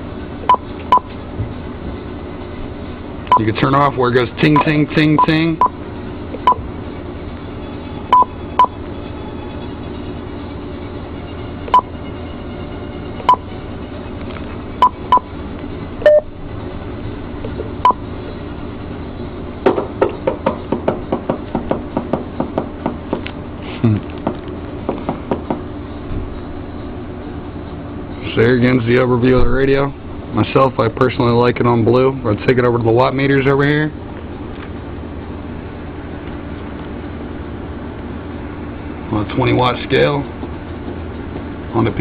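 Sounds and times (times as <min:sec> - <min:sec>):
radio button beeps: 0:16.0 - 0:16.3.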